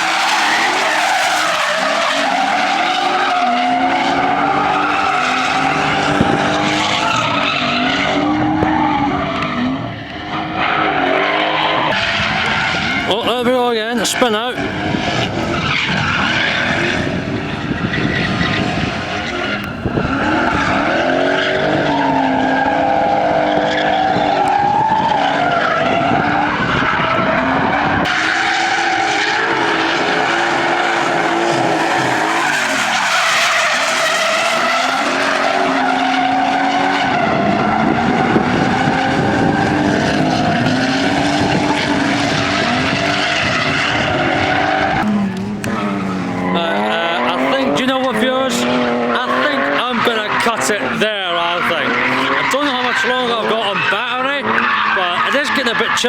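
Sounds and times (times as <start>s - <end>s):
car engine revving: 0.0s - 56.0s
tyres screeching: 0.0s - 56.0s.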